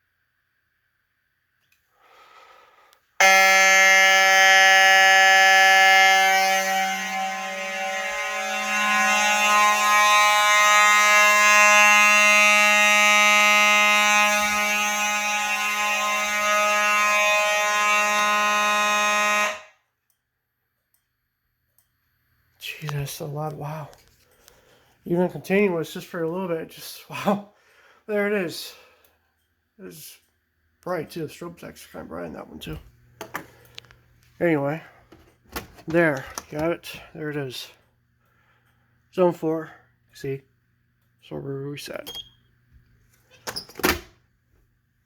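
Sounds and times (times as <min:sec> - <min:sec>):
fire alarm horn blaring: 0:03.2 - 0:20.1, 0:36.8 - 0:38.8.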